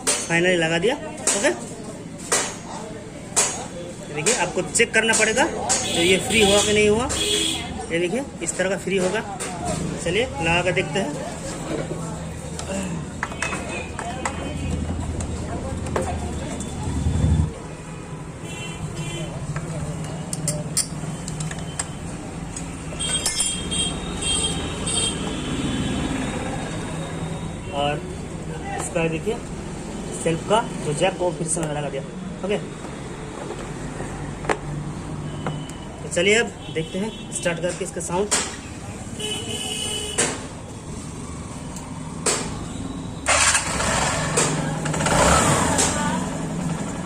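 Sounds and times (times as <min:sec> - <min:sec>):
metallic clinking of tools: 0:20.3 - 0:21.9, 0:23.1 - 0:23.7
starter motor cranking: 0:43.2 - 0:44.4.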